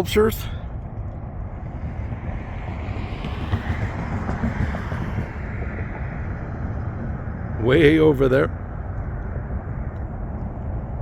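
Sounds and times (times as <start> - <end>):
wind on microphone: 0.7 - 7.7
vehicle passing: 1.2 - 11.0.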